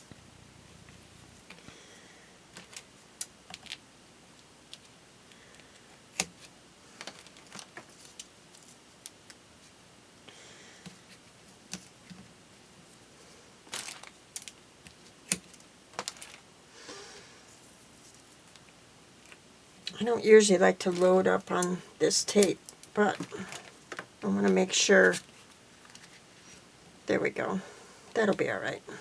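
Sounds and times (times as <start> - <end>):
soft paper rustles: 6.4 - 9.0, 10.9 - 16.5, 20.7 - 21.5, 22.8 - 26.7.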